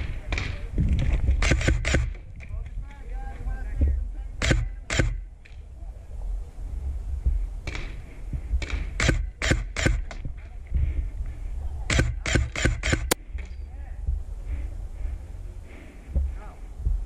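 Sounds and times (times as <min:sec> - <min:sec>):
airsoft rifle shots: 0:01.4 - 0:02.2, 0:04.4 - 0:05.2, 0:08.6 - 0:10.1, 0:11.9 - 0:13.2.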